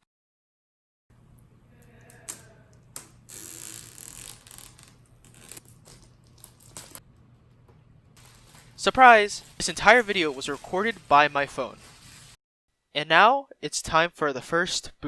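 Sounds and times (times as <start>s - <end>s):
plastic film peeling: 2.3s - 7.0s, 8.2s - 12.4s.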